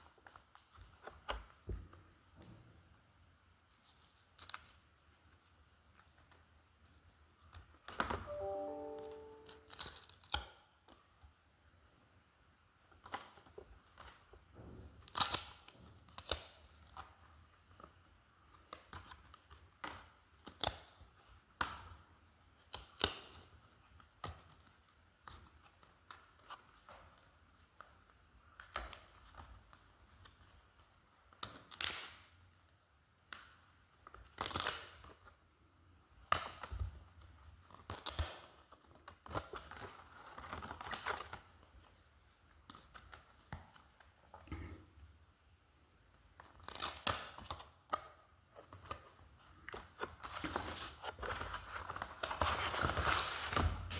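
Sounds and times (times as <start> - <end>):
cards and packaging rustling: 37.7 - 41.7, 48.6 - 53.9.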